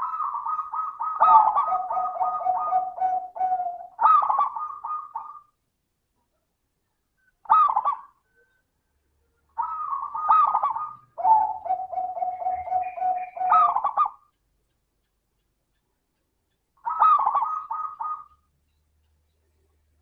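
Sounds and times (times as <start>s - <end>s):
dove cooing: 0.0s - 5.5s, 7.4s - 8.6s, 9.6s - 14.3s, 16.8s - 18.5s.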